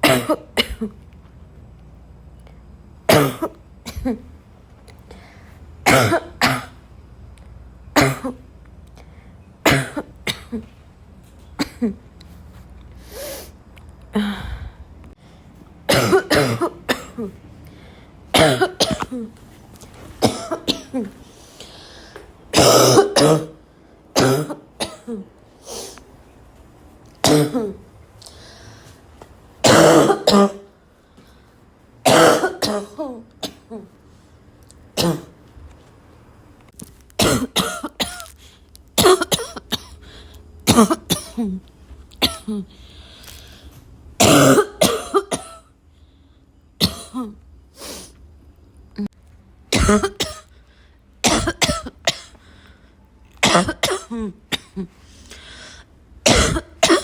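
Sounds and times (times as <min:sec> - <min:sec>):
person coughing dry barking cough: 0:00.0 - 0:01.0, 0:03.1 - 0:04.2, 0:05.8 - 0:06.8, 0:08.0 - 0:08.4, 0:09.6 - 0:10.6, 0:11.6 - 0:12.0, 0:15.9 - 0:17.4, 0:18.3 - 0:19.3, 0:20.2 - 0:21.1, 0:22.5 - 0:23.6, 0:24.2 - 0:25.2, 0:27.2 - 0:27.8, 0:29.6 - 0:30.7, 0:32.0 - 0:33.9, 0:35.0 - 0:35.3, 0:37.2 - 0:38.3, 0:39.0 - 0:40.0, 0:40.7 - 0:41.6, 0:42.2 - 0:42.6, 0:44.2 - 0:45.7, 0:46.8 - 0:47.4, 0:49.7 - 0:50.5, 0:51.2 - 0:52.4, 0:53.4 - 0:54.9, 0:56.2 - 0:57.0.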